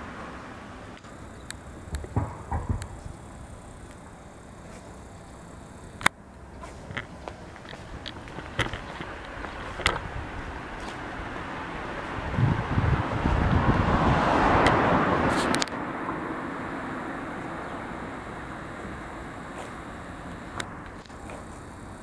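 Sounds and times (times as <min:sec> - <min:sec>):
road traffic rumble: 0:00.0 - 0:22.0
faint clicks: 0:00.9 - 0:10.1
wind on microphone: 0:07.7 - 0:15.6.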